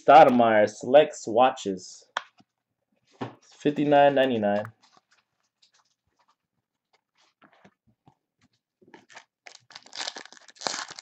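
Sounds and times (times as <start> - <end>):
plastic wrapper crinkling: 8.9 - 11.0.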